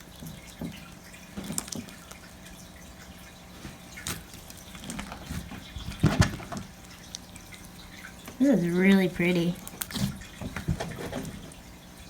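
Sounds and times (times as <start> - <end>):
wet sticky clicks and pops: 9.6 - 10.1.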